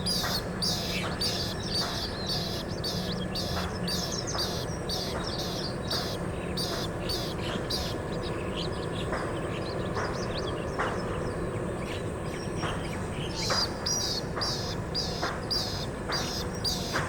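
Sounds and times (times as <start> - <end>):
coot clicking calls: 0.1 - 8.4, 12.6 - 17.0.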